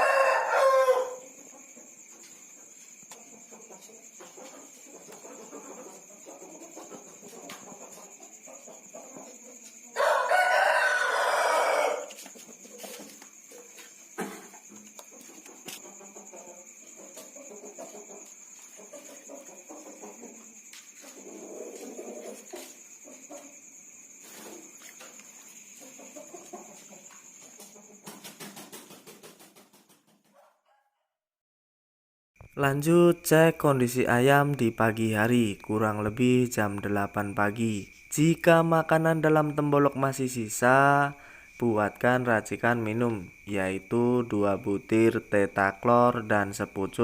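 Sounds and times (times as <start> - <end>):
rooster crowing: 0.0 - 1.7, 8.4 - 12.9
chicken clucking: 0.0 - 30.9
faint clucking: 3.1 - 9.8.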